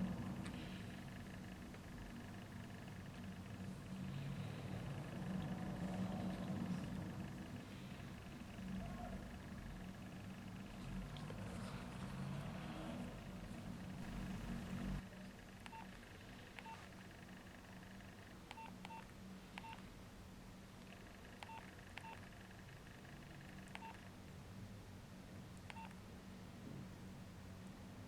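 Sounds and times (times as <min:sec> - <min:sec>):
faint keypad beeps: 0:14.1 - 0:19.8, 0:20.8 - 0:24.1, 0:25.7 - 0:26.0.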